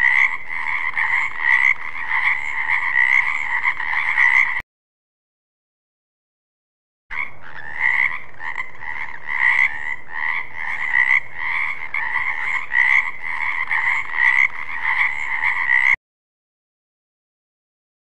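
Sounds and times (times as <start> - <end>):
frogs croaking: 0.0 - 4.6, 7.1 - 16.0.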